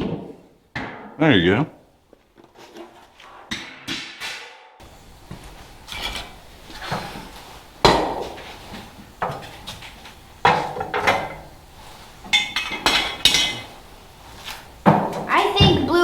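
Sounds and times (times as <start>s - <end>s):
metal clanking and clinking: 9.2s - 11.5s, 12.2s - 13.8s.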